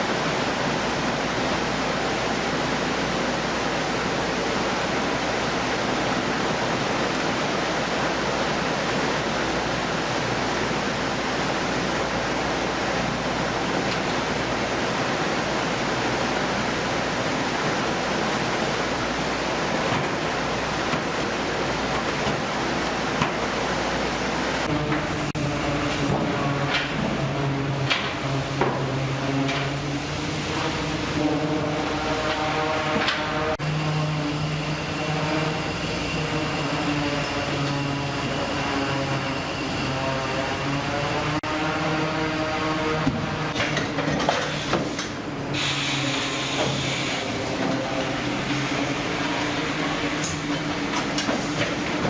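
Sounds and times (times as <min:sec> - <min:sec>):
running water rushing: 0:00.0 - 0:26.1
boat engine drone: 0:00.0 - 0:43.8.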